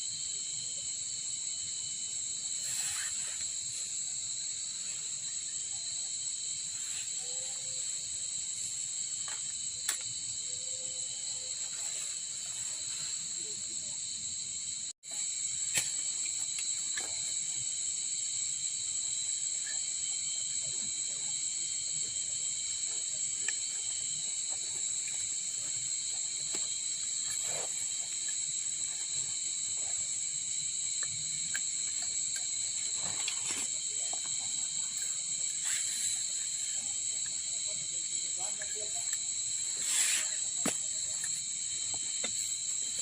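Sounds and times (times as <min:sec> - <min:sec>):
insects droning: 0:00.0 - 0:43.0.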